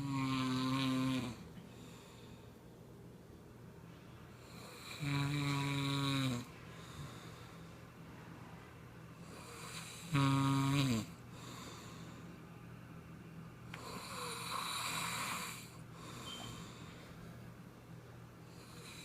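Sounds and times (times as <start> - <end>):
person snoring: 0.0 - 1.4, 4.5 - 6.5, 9.2 - 11.2, 13.8 - 15.8
soft breathing: 1.4 - 2.7, 6.4 - 10.2, 11.1 - 12.5, 13.7 - 17.6.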